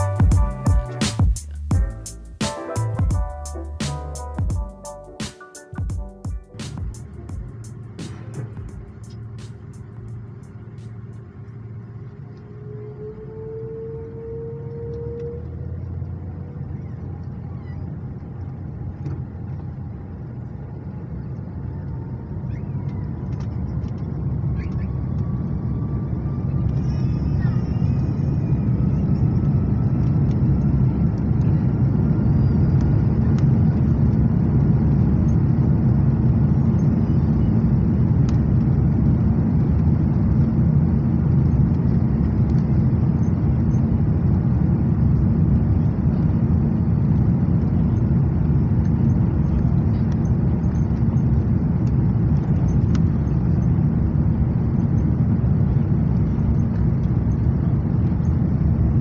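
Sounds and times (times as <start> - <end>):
airplane cabin engine rumble: 0.0 - 59.0.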